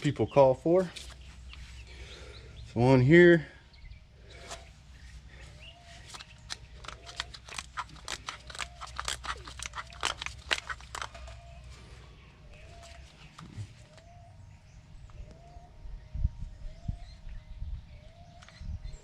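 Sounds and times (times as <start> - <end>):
hand tools clicking and tapping: 6.1 - 11.5.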